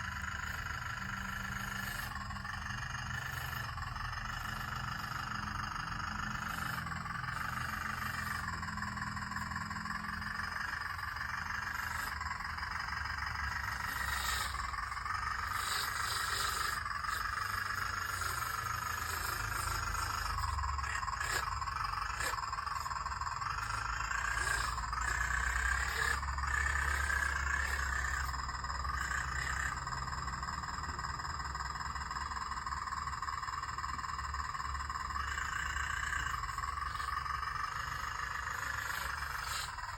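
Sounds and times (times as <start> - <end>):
toy excavator motor whining: 0.0 - 39.9.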